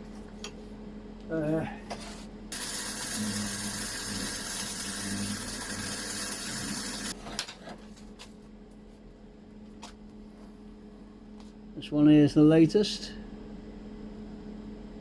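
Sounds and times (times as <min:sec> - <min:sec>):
welding arc crackling and hissing: 0:02.5 - 0:07.2.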